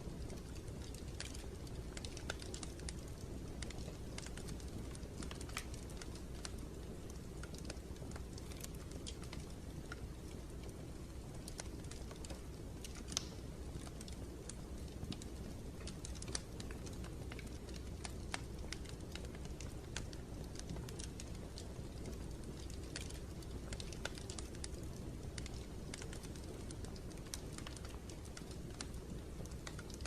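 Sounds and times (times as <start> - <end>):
sharp clicks and crackles: 0.2 - 30.0.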